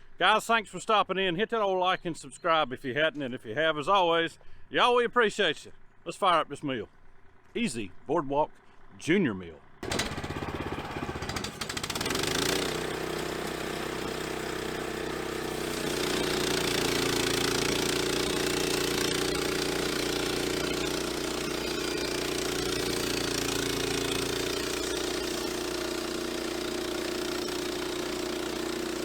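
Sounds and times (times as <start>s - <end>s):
sawmill engine running: 9.8s - 29.0s.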